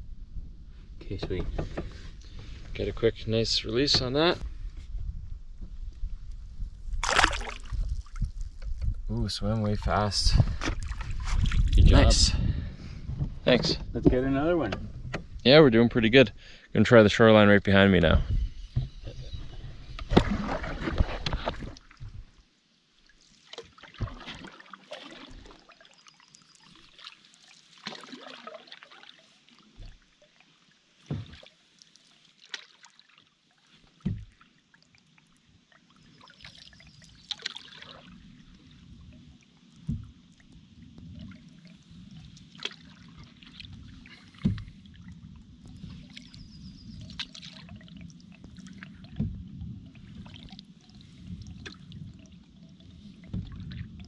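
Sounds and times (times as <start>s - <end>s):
low rumble: 0.0s - 21.3s
water splashing: 6.9s - 8.8s, 9.8s - 12.3s, 20.1s - 22.4s, 23.0s - 35.0s, 35.7s - 54.0s
water trickling: 7.0s - 12.3s, 20.2s - 54.0s
knocks against canoe hull: 31.1s - 31.4s, 34.0s - 34.3s, 44.4s - 44.8s.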